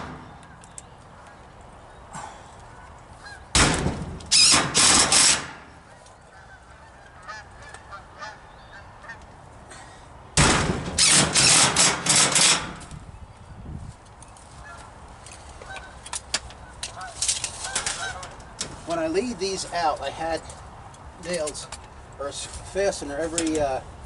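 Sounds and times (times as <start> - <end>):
impact driver hammering: 3.6 - 5.6, 10.4 - 12.8.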